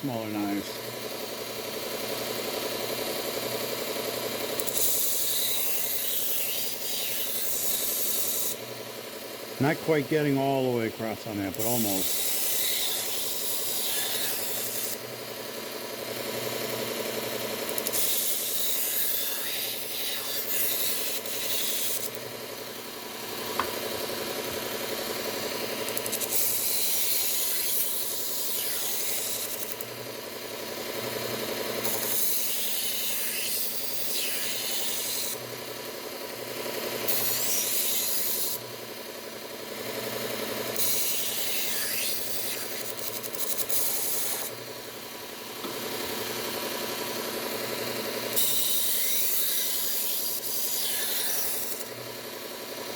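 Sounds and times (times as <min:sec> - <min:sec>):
belt sharpener motor hum: 0:00.1 - 0:52.9
knife blade grinding on belt: 0:04.6 - 0:08.6, 0:11.6 - 0:15.0, 0:17.8 - 0:22.2, 0:25.9 - 0:29.8, 0:31.8 - 0:35.4, 0:37.1 - 0:38.6, 0:40.8 - 0:44.6, 0:48.3 - 0:52.0.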